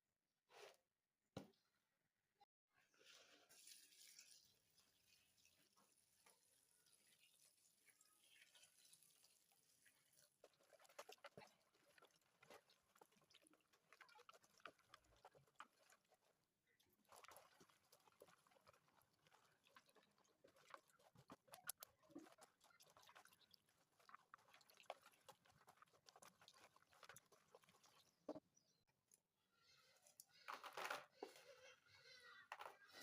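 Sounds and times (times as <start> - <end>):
small objects clicking and rustling: 30.0 - 31.5.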